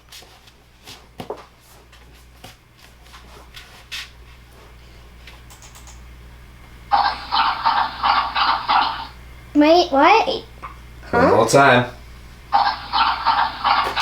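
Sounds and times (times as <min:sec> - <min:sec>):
faint clicks: 0:05.5 - 0:06.0
dog lapping water: 0:06.9 - 0:09.2, 0:12.5 - 0:14.0.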